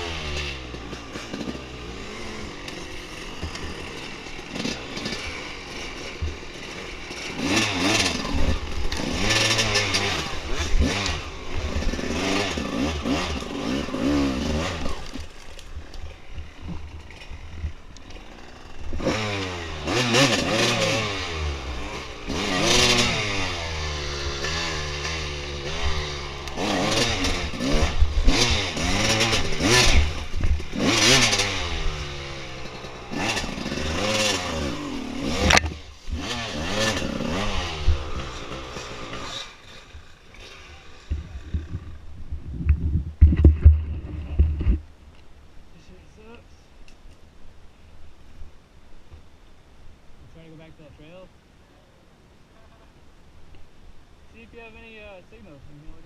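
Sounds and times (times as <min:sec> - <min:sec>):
dirt bike engine revving: 0:00.0 - 0:44.9.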